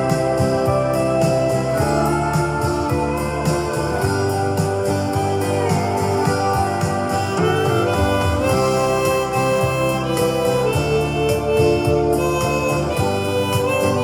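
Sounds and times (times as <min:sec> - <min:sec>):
instrumental guitar music: 0:00.0 - 0:14.0
steady ticking beat: 0:06.2 - 0:14.0.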